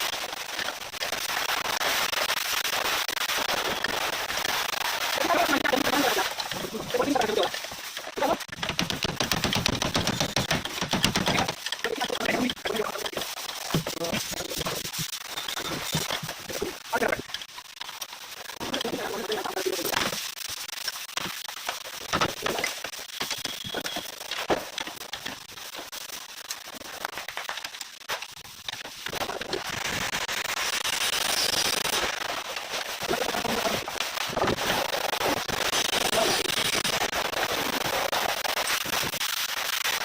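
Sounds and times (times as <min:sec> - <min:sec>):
metal parts clicking and knocking: 0:08.5 - 0:12.2.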